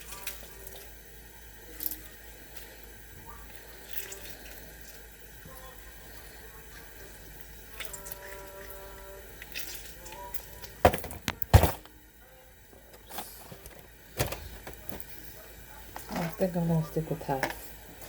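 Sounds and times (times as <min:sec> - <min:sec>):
dishes knocking when set down: 0:10.9 - 0:11.9.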